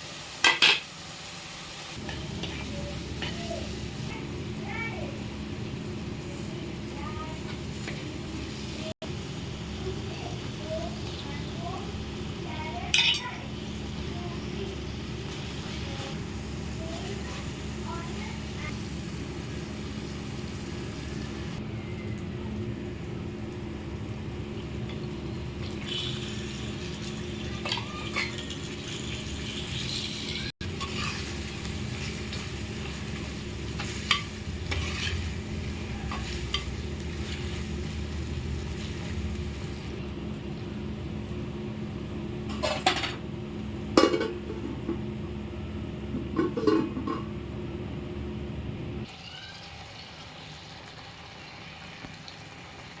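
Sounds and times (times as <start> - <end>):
curry sizzling in a pot: 0.0 - 40.1, 49.0 - 53.0
metal spoon scraping a pot: 30.8 - 31.3, 33.8 - 35.3.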